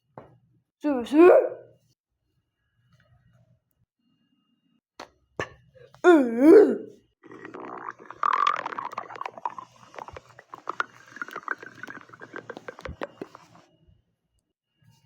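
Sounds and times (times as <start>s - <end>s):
stomach growling: 6.1s - 13.7s.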